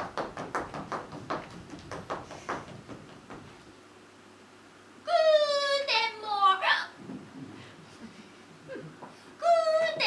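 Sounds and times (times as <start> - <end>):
steady hum: 0.0 - 5.1
faint low hiss: 0.0 - 10.0.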